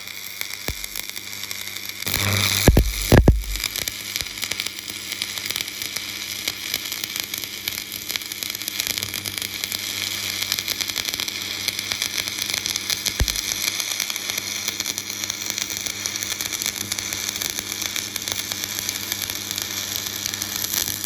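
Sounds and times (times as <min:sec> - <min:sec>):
welding arc crackling hiss: 0:00.0 - 0:21.0
low knock: 0:02.6 - 0:03.7.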